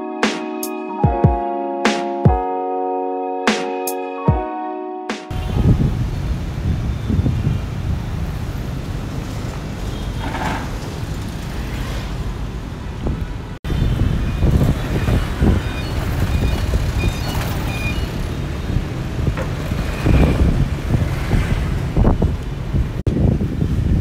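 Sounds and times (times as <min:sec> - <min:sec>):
wind buffeting microphone: 0:05.3 - 0:09.5, 0:13.0 - 0:24.0
street traffic: 0:05.3 - 0:24.0.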